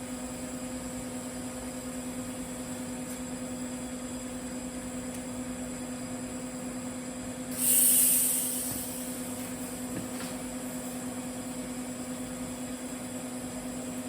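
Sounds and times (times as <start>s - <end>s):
welder electrical hum: 0.0s - 14.0s
loud hiss: 7.5s - 9.5s.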